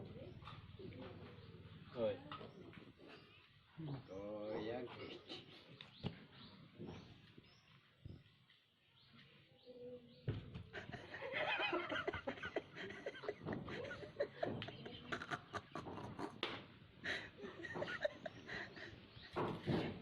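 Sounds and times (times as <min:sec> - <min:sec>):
people laughing and snickering: 0:04.9 - 0:05.8, 0:10.6 - 0:20.0.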